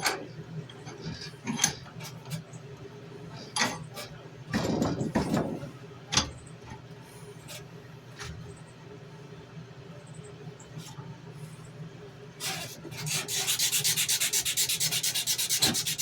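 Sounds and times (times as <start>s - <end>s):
sandpaper strokes on blade: 12.4s - 16.0s.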